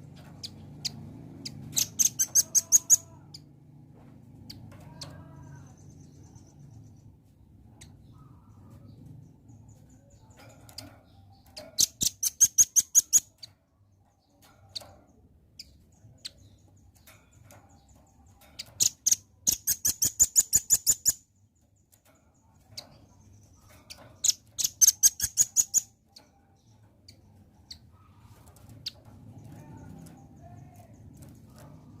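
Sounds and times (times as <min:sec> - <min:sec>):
bird rapid high chirps: 0:00.1 - 0:03.4, 0:11.4 - 0:13.5, 0:18.6 - 0:21.4, 0:22.8 - 0:32.0.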